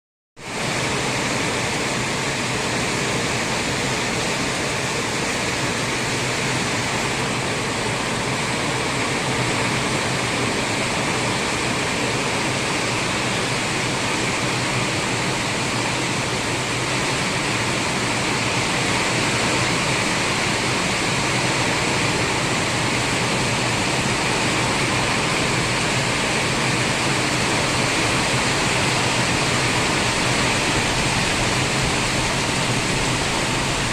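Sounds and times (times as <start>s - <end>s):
rushing water: 0.4s - 33.9s.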